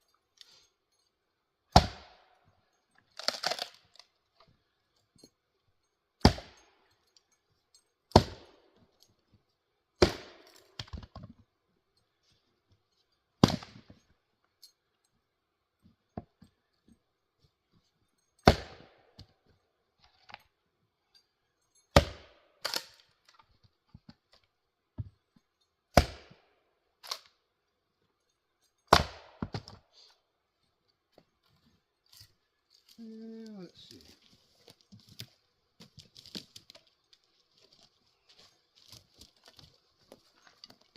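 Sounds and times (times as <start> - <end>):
axe splitting wood: 1.7 - 2.2, 3.1 - 3.8, 6.2 - 6.6, 8.1 - 8.5, 10.0 - 11.1, 13.4 - 13.9, 18.4 - 19.3, 21.9 - 23.0, 25.9 - 26.4, 28.9 - 29.8.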